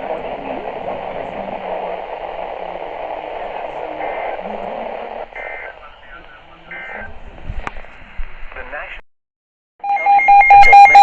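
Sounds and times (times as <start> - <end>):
radio static hiss: 0.0 - 9.0
short high beeps: 9.8 - 11.0.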